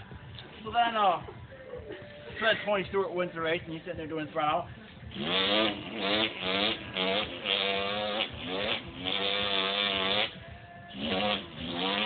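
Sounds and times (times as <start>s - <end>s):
man imitating car engine: 5.1s - 12.0s.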